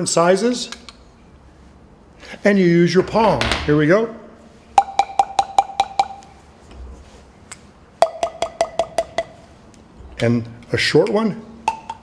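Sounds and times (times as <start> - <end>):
palm pipes tapped: 4.8 - 6.4, 7.5 - 9.5, 11.0 - 12.0.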